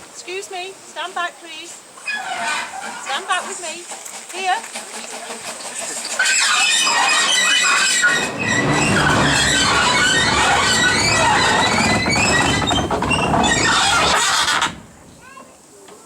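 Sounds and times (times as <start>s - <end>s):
steel wheel flange squeal: 2.0s - 3.1s, 6.1s - 14.8s
locomotive low rumble: 6.8s - 15.3s.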